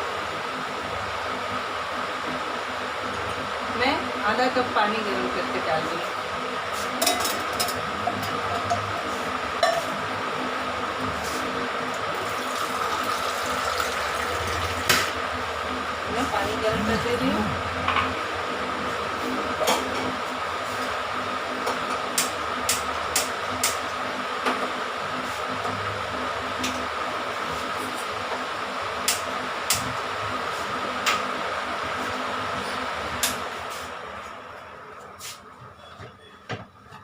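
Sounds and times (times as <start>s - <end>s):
stove hissing: 9.0s - 17.7s.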